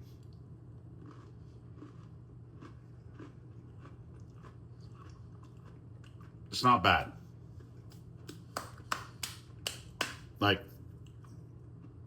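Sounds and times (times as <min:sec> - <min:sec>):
steady low hum: 0:00.0 - 0:12.0
cookie crunching while chewing: 0:00.1 - 0:06.6.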